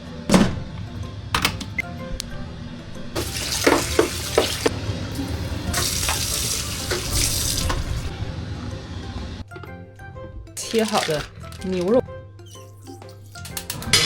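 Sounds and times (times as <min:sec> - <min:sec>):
kitchen tap running: 0:03.2 - 0:08.1, 0:10.5 - 0:11.9.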